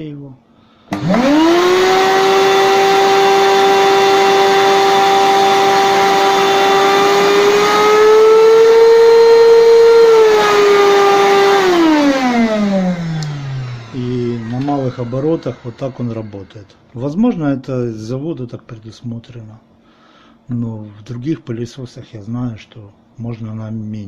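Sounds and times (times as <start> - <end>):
vacuum cleaner motor whine: 0.8 - 17.4.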